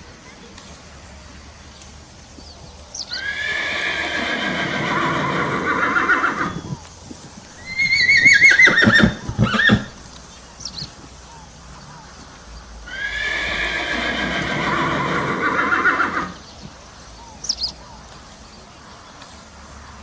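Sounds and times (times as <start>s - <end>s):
horse whinnying: 3.1s - 6.8s, 7.6s - 10.0s, 12.9s - 16.4s.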